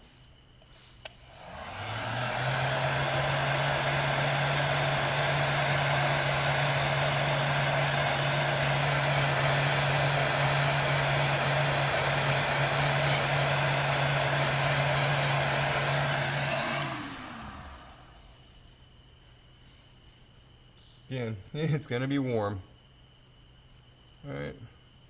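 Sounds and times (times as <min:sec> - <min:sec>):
hair dryer blowing: 0:01.2 - 0:18.4.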